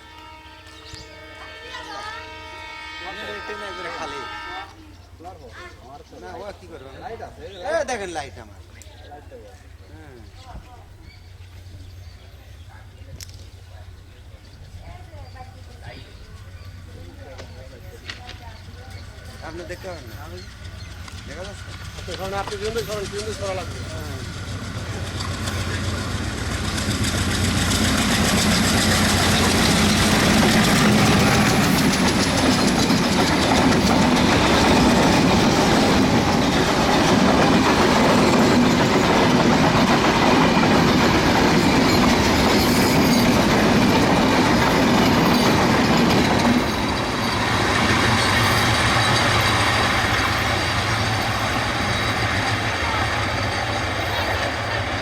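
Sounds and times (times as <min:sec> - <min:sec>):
train passing at speed: 0:00.0 - 0:55.0
wheels clattering over rail joints: 0:15.2 - 0:55.0.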